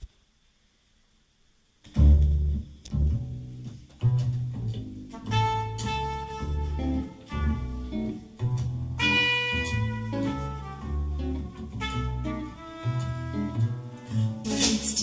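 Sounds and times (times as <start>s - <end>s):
double bass: 1.9s - 15.0s
sustained saxophone-like tones: 5.1s - 8.4s, 9.0s - 14.5s.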